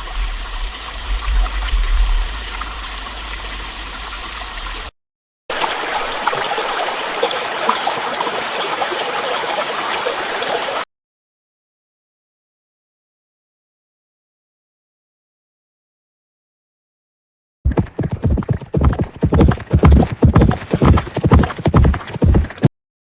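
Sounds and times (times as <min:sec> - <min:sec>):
rushing water: 0:00.0 - 0:04.9, 0:05.5 - 0:10.9, 0:17.7 - 0:22.7.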